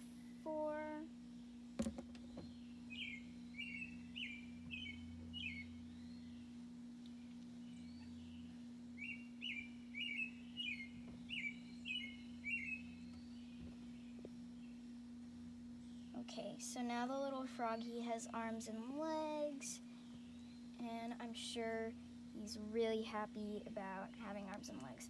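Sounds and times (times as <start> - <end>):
steady low hum: 0.0 - 25.0
bird chirping: 1.3 - 14.9.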